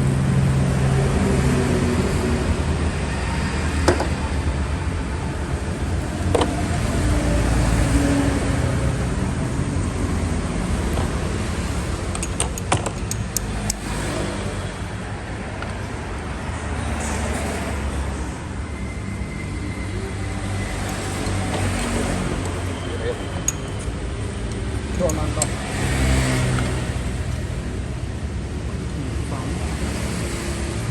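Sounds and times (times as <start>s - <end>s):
car engine rumbling: 0.0s - 29.2s
sharp clicks: 12.2s - 13.9s.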